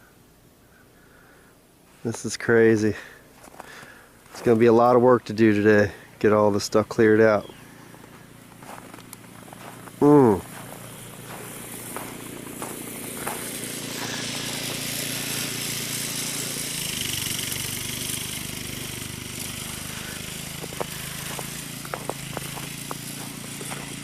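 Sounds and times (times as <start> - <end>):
engine running: 2.7 - 24.0.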